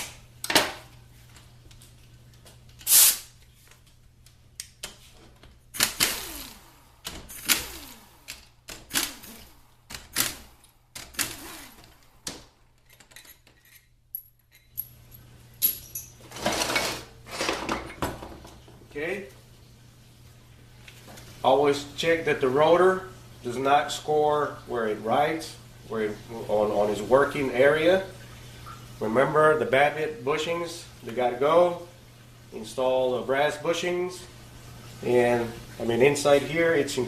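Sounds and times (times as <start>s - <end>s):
metal parts clinking and knocking: 12.8s - 18.2s.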